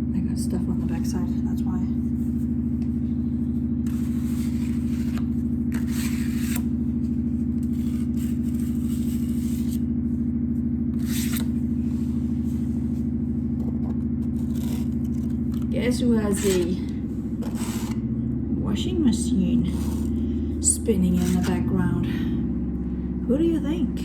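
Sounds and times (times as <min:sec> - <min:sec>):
washing machine spinning hum: 0:00.0 - 0:24.0
knife scraping compound on wall: 0:03.8 - 0:06.8, 0:07.6 - 0:09.9, 0:11.0 - 0:11.6, 0:14.2 - 0:18.0, 0:19.6 - 0:20.2, 0:21.0 - 0:21.8.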